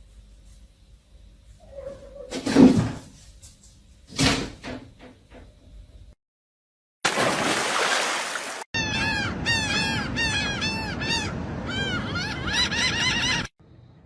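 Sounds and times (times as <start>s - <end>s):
high-pitched animal calls: 1.6s - 2.4s.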